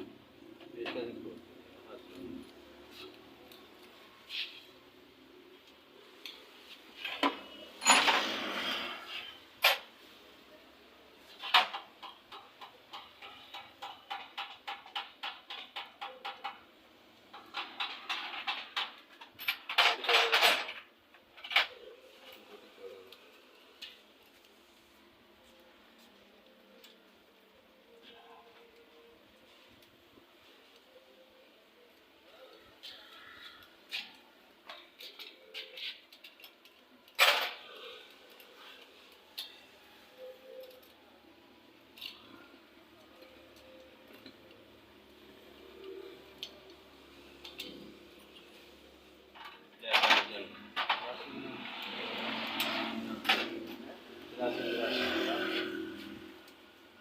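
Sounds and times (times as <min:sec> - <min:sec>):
tools clicking and tapping: 0:11.4 - 0:21.9, 0:32.8 - 0:41.0.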